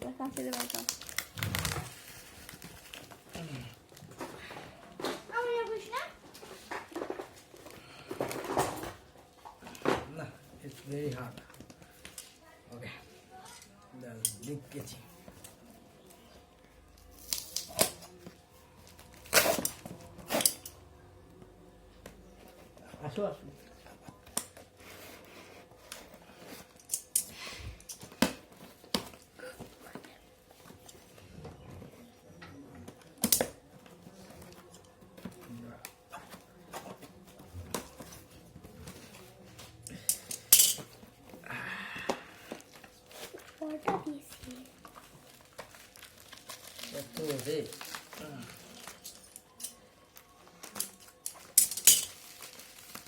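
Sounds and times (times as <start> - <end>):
packaging snapping and crackling: 0.2 - 4.0, 44.8 - 49.4
packaging clattering rustles: 42.6 - 53.0.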